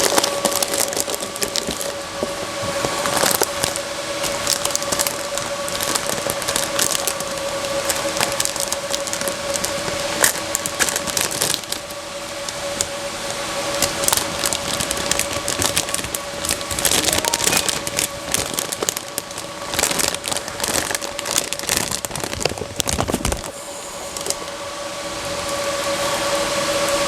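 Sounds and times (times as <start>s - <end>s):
packaging crackling and rustling: 0.0s - 24.6s
steady hum: 0.0s - 27.0s.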